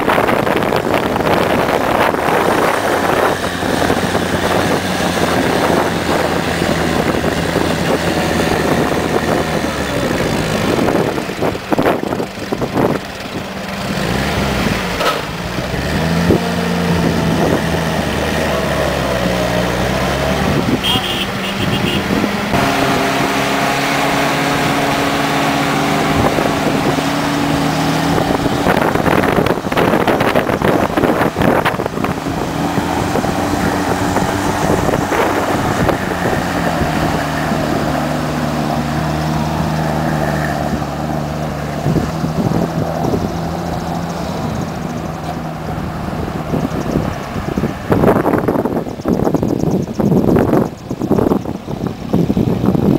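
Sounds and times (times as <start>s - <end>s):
jeep engine running: 0.0s - 52.9s
wind on microphone: 0.0s - 52.9s
clatter: 10.1s - 15.6s.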